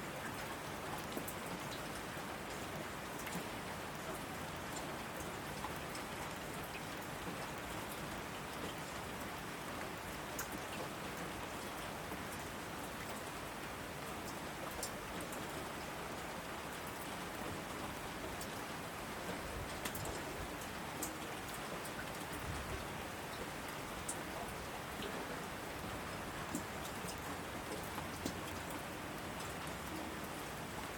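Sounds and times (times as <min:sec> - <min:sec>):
heavy rain on asphalt: 0:00.0 - 0:30.9
raindrops ticking: 0:19.6 - 0:22.4, 0:23.3 - 0:28.8.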